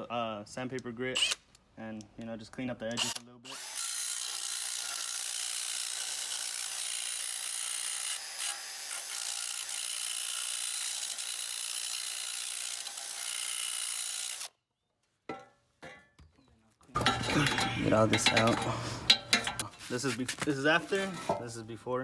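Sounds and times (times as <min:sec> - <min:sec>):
drill sanding metal pipe: 0:03.0 - 0:14.5, 0:17.0 - 0:20.1.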